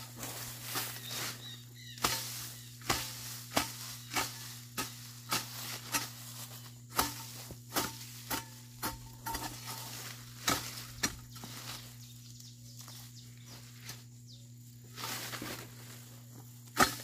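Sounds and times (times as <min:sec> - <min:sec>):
hoe chopping into soil: 0:02.0 - 0:11.8, 0:16.6 - 0:17.0.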